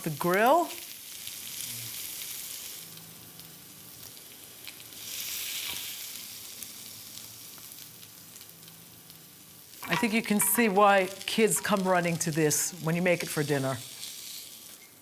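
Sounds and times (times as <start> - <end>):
chicken sizzling on a grill: 0.0 - 15.0.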